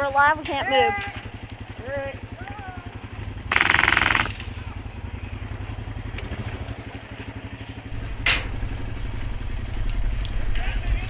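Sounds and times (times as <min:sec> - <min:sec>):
atv engine idling: 0:03.2 - 0:06.8
loud rattling burst: 0:03.5 - 0:04.9.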